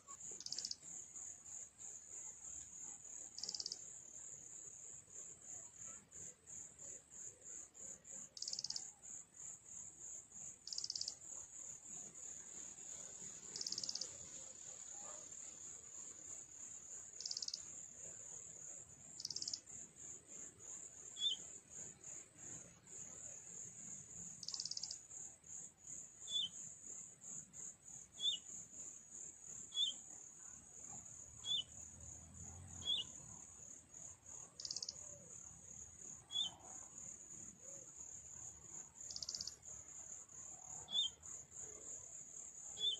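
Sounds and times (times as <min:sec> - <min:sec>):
insect trill: 0:00.0 - 0:42.9
bird chirping: 0:21.1 - 0:21.5, 0:26.2 - 0:26.6, 0:28.2 - 0:28.5, 0:29.7 - 0:30.0, 0:31.4 - 0:31.8, 0:32.8 - 0:33.2, 0:34.6 - 0:35.0, 0:36.3 - 0:36.6, 0:39.1 - 0:39.6, 0:40.9 - 0:41.2.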